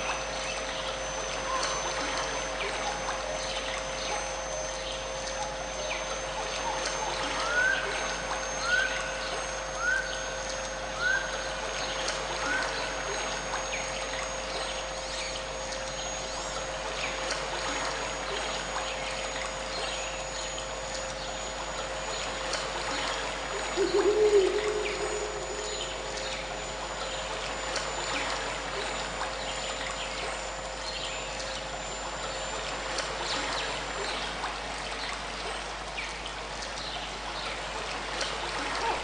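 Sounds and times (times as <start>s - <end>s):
steady pure tones: 0.0s - 35.1s
trickling water: 0.0s - 39.0s
low warbling bird call: 3.4s - 10.4s, 11.0s - 13.8s, 23.0s - 29.8s
bird rising call: 23.7s - 26.7s.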